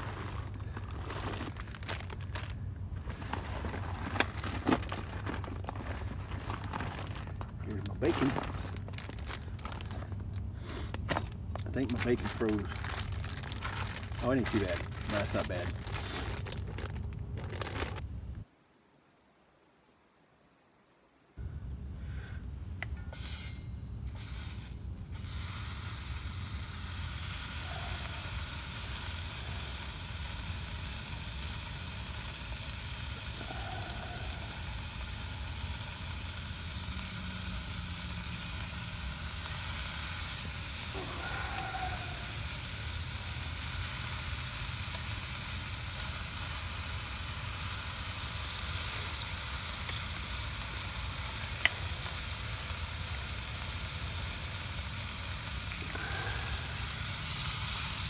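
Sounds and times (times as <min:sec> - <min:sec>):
bacon sizzling in pan: 0:23.3 - 0:58.0.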